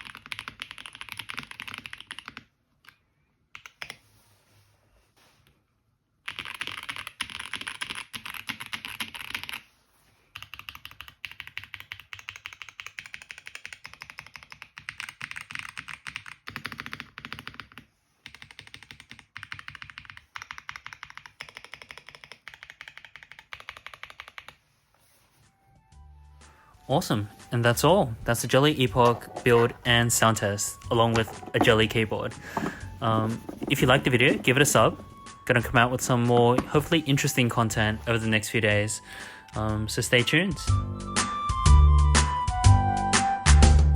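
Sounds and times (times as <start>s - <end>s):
mechanical keyboard typing: 0.0s - 3.0s, 6.3s - 9.6s, 10.4s - 24.6s, 28.7s - 37.4s.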